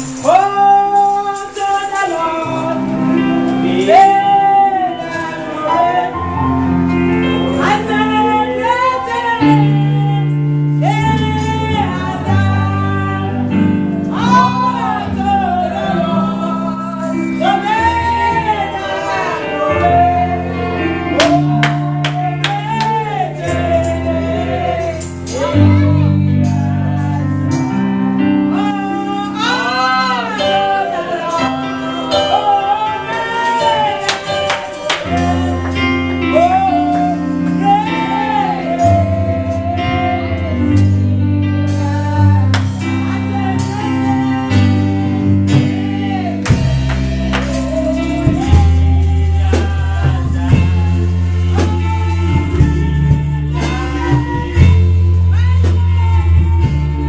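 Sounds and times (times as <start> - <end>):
keyboard and bass chords: 0.0 - 57.0.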